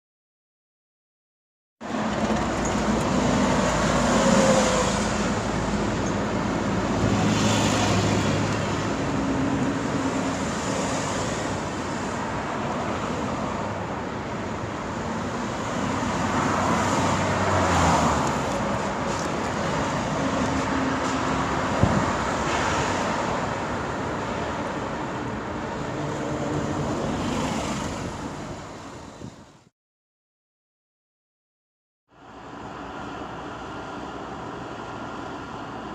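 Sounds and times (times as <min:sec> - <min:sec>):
passing vehicle engines: 0:01.8 - 0:29.6
road noise: 0:01.8 - 0:29.7, 0:32.1 - 0:35.9.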